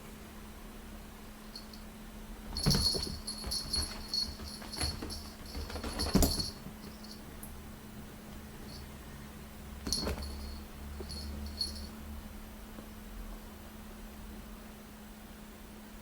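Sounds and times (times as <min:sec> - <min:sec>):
small bell jingling: 0:01.5 - 0:01.8, 0:02.5 - 0:07.3, 0:09.8 - 0:12.0.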